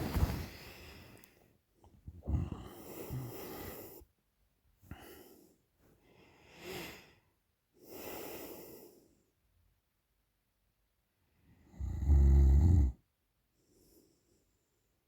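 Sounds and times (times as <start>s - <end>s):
woman breathing heavily: 2.2s - 4.0s.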